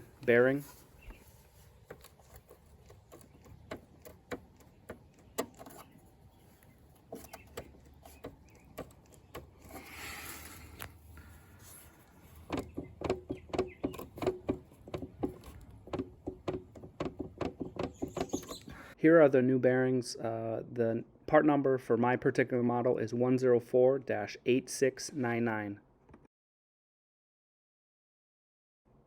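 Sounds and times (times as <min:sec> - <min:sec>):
mower wheel bearing clacking: 0:12.1 - 0:18.7.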